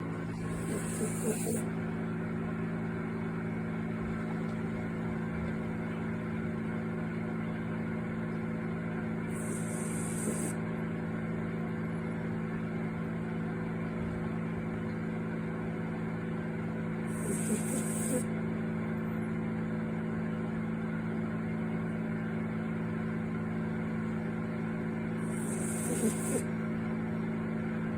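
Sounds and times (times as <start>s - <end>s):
dishwasher humming: 0.0s - 2.0s.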